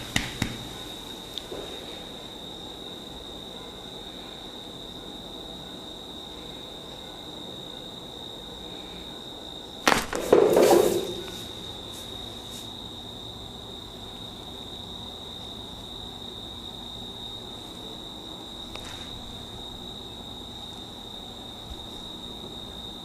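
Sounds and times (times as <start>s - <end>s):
sharp cracks and slaps: 0.0s - 0.8s, 9.8s - 11.4s
steady high-pitched whine: 0.0s - 23.0s.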